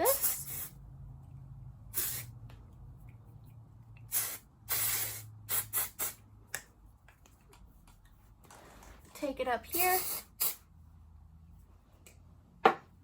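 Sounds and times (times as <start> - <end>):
aerosol spray hissing: 0.0 - 0.8, 1.9 - 2.4, 4.1 - 6.2.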